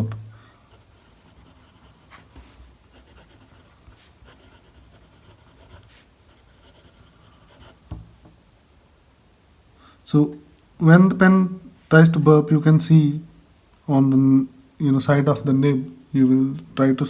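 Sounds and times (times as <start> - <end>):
pen nib scratching on paper: 0.7 - 7.8
soft knock: 7.9 - 8.4.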